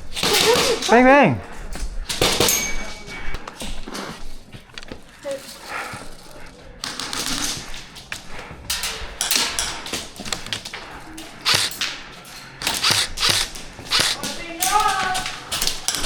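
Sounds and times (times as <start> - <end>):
gear rustling and knocking: 8.7 - 11.9, 12.6 - 16.0
airsoft guns firing: 11.4 - 11.9, 12.6 - 14.4.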